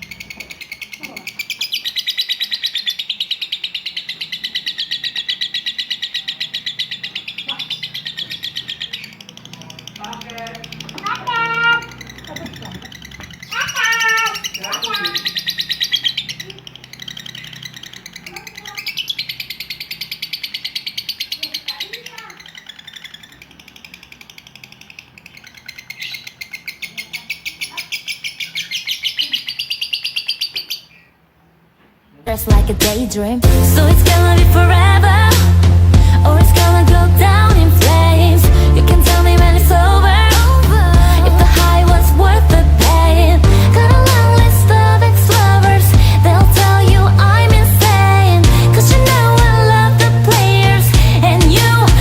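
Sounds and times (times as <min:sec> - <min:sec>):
lovebird chattering trill: 0:00.0 - 0:31.1.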